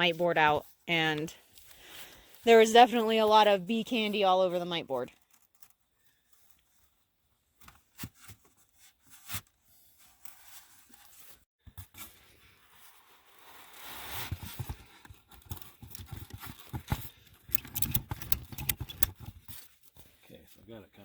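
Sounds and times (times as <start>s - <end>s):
strap webbing rustling: 5.2s - 6.9s
ratchet strap clicking: 17.4s - 19.2s.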